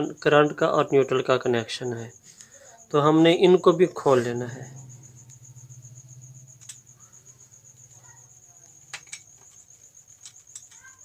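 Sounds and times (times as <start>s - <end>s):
cricket trilling: 0.0s - 11.0s.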